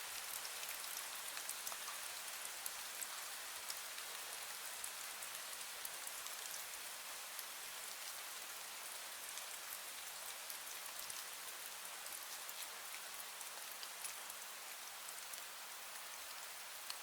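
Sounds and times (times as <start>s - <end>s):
rain drips ticking: 0.2s - 6.6s, 12.6s - 17.0s.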